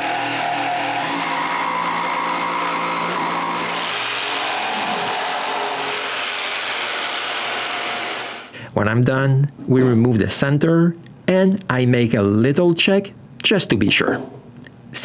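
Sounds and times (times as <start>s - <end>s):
jigsaw cutting countertop: 0.0s - 8.5s.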